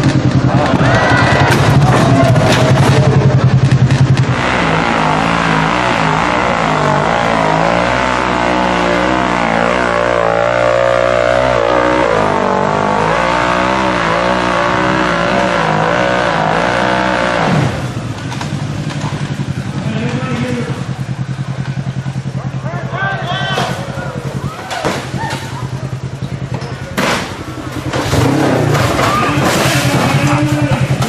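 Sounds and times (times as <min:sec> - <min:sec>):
off-road vehicle engine revving: 0:00.0 - 0:31.0.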